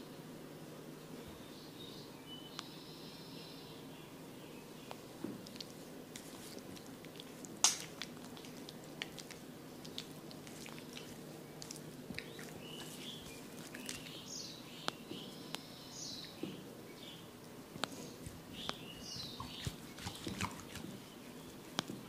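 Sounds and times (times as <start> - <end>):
steady low hum: 0.0 - 22.0
birds chirping: 1.2 - 5.7, 9.8 - 22.0
wet clicks and pats of massage: 4.9 - 14.2, 17.8 - 22.0.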